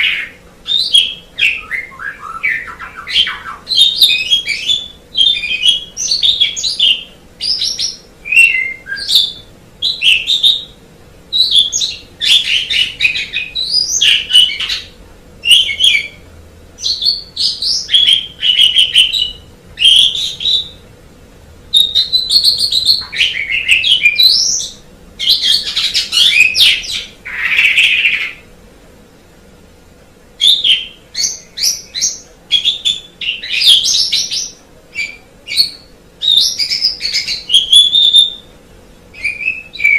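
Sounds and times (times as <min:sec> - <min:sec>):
starling singing chattering whistles: 0:00.0 - 0:16.2, 0:16.8 - 0:20.8, 0:21.7 - 0:28.4, 0:30.4 - 0:38.5, 0:39.1 - 0:39.9.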